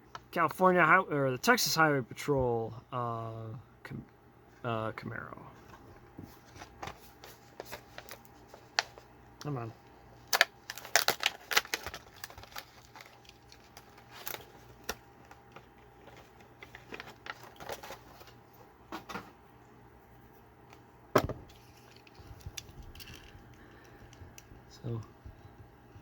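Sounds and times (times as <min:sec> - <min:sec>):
plastic packaging cracking open: 0:10.2 - 0:18.4.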